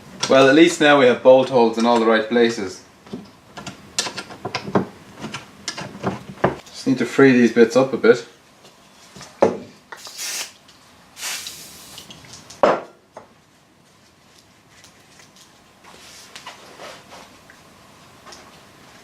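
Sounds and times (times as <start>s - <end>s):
short hisses: 10.0s - 10.6s, 11.2s - 12.1s.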